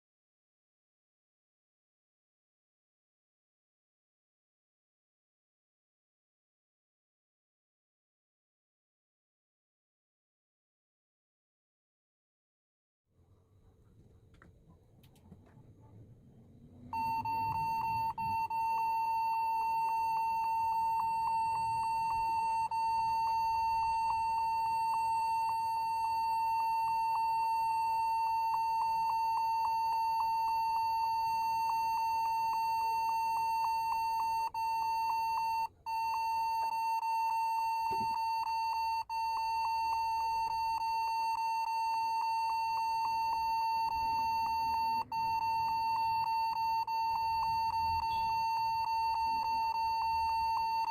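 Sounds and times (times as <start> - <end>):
high-pitched computer beep: 16.9 - 50.9.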